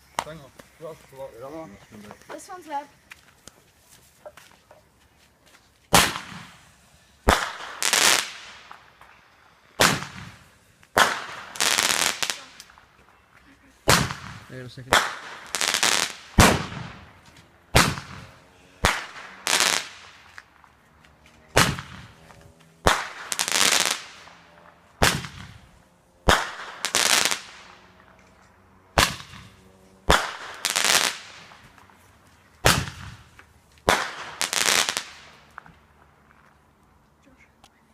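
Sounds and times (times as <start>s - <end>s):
fireworks bangs and bursts: 5.9s - 9.2s, 9.8s - 13.0s, 13.8s - 20.7s, 21.5s - 22.2s, 22.8s - 24.4s, 25.0s - 27.8s, 29.0s - 31.8s, 32.6s - 35.4s.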